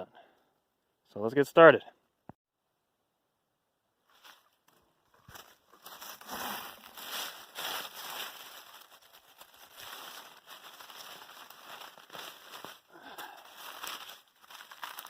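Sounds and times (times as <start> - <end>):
leaf mulch rustling and crackling: 5.2 - 15.0.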